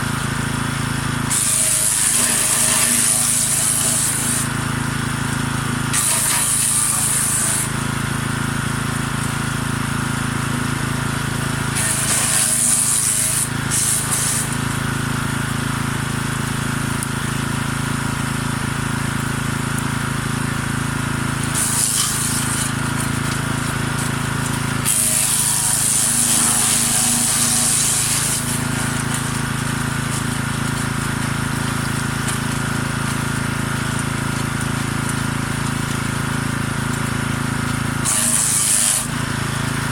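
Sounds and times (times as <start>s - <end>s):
wood chipper running: 0.0s - 39.9s
hissing branch shredding: 1.3s - 4.5s, 5.9s - 7.7s, 11.7s - 14.6s, 21.4s - 32.5s, 38.0s - 39.1s.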